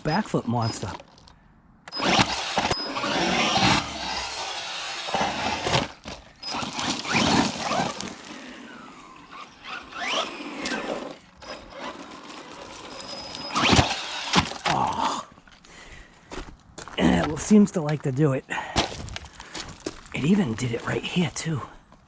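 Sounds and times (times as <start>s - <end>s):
tyres on gravel: 0.0s - 22.0s
electric motor whine: 1.9s - 14.7s.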